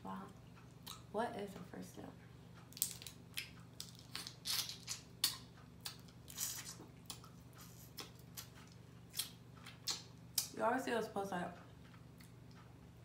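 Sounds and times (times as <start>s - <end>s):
person chewing food: 2.6s - 10.5s, 11.6s - 13.0s.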